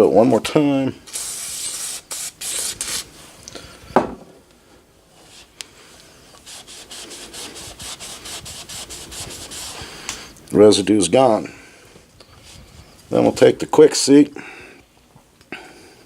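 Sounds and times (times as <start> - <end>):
single knock: 4.0 - 4.3.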